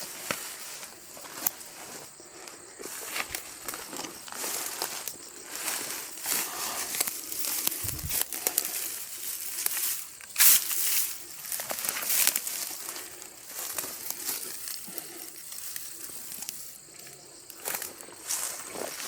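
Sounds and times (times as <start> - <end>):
dry leaves rustling and crunching: 2.9 - 16.9.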